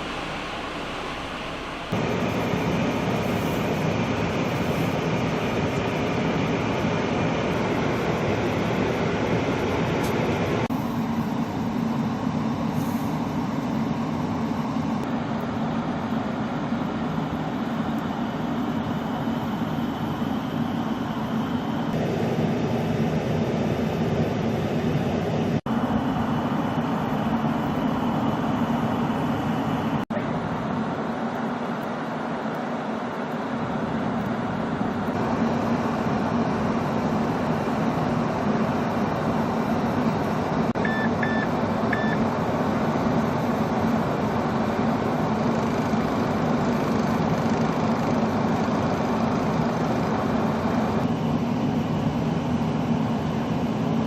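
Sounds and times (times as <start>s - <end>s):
heavy vehicle rumble: 0.0s - 54.0s
short high beeps: 40.8s - 42.2s.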